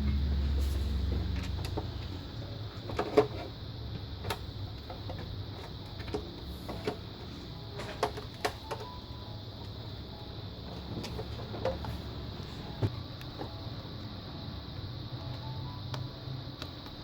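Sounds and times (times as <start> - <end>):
low hum: 0.0 - 2.8.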